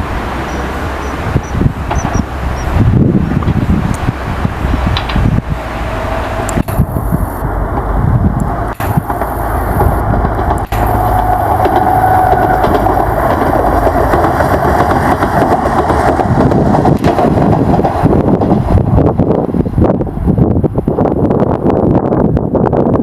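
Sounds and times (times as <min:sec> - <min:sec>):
train wheels rumbling on rail: 0:00.0 - 0:23.0
whining tone: 0:05.4 - 0:13.4
sharp clicks: 0:06.5 - 0:06.9, 0:07.8 - 0:11.9.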